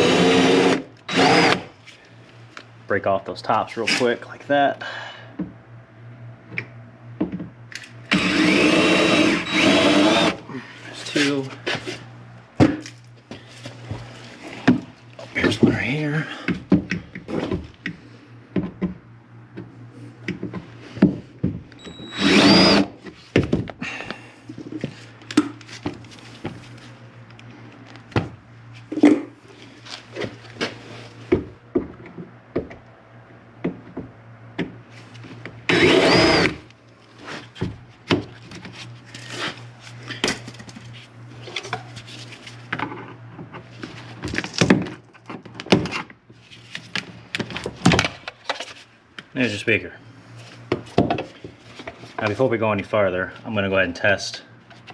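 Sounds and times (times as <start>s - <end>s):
power drill drilling: 0.0s - 1.7s, 8.1s - 10.4s, 21.8s - 23.0s, 35.7s - 36.6s.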